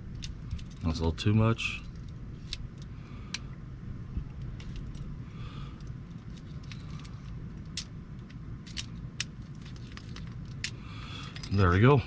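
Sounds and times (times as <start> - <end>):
lock parts clicking: 0.0 - 1.0, 5.7 - 11.6
steady low hum: 0.0 - 12.0.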